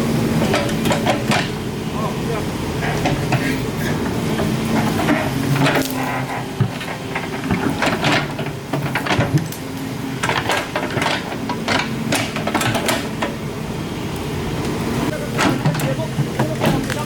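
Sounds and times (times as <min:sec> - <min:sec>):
excavator engine running: 0:00.0 - 0:17.0
machine knocks and clanks: 0:00.4 - 0:01.6, 0:02.8 - 0:03.4, 0:04.0 - 0:09.6, 0:10.2 - 0:13.4, 0:15.1 - 0:17.0.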